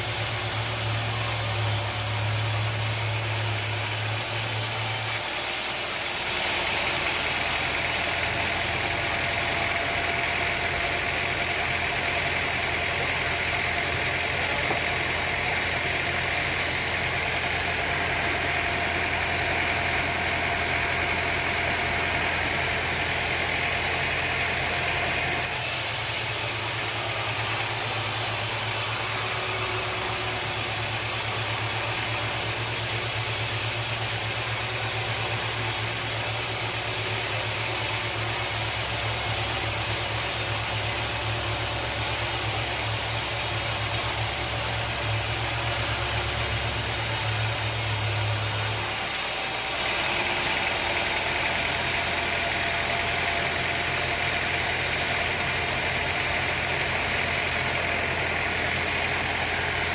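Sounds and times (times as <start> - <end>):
sawmill machinery hum: 0.0 - 59.9.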